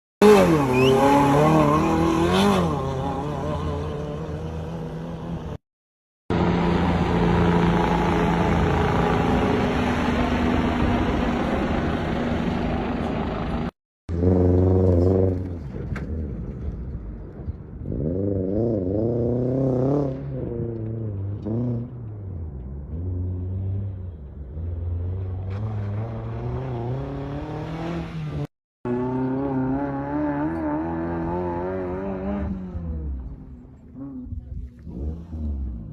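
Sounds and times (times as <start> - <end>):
rally car engines revving: 0.2 - 5.6, 12.9 - 35.9.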